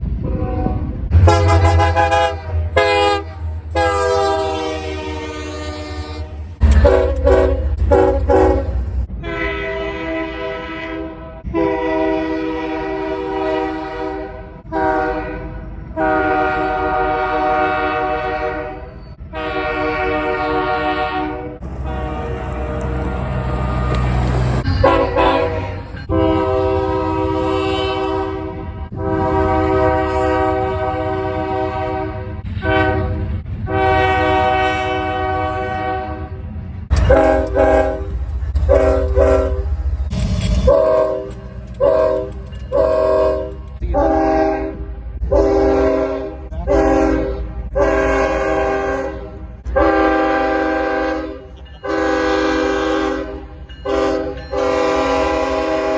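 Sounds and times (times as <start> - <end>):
low rumble of train: 0.0 - 55.9
locomotive air horn blasts: 0.2 - 55.9.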